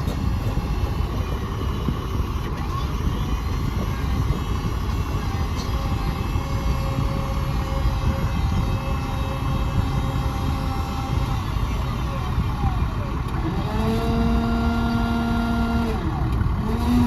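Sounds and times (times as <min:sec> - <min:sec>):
diesel truck engine rumbling: 0:00.0 - 0:17.0
mid-pitched whine: 0:00.0 - 0:17.0.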